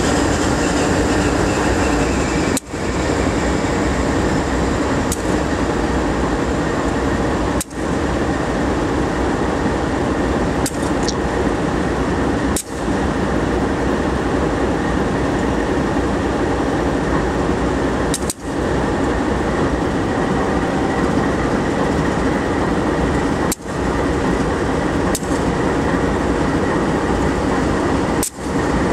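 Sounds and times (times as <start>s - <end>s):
freight train rumbling past: 0.0s - 28.9s.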